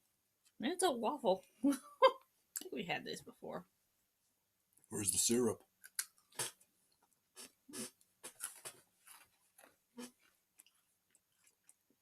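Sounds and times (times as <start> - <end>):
chewing crunchy cookie: 5.8 - 12.0.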